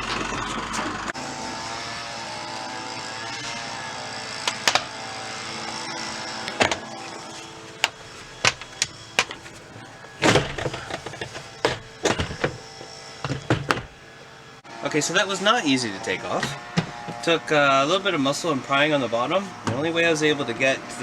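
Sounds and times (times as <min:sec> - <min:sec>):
steady hum: 0:04.0 - 0:21.0
scraping clatter: 0:06.4 - 0:14.3, 0:16.0 - 0:19.8.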